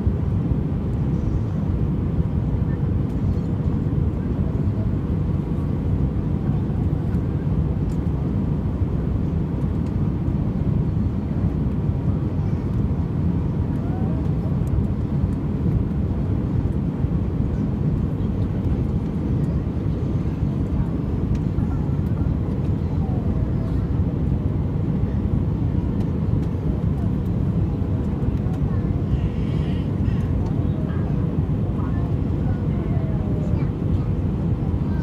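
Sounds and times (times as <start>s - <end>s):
jet engines rumbling: 0.0s - 35.0s.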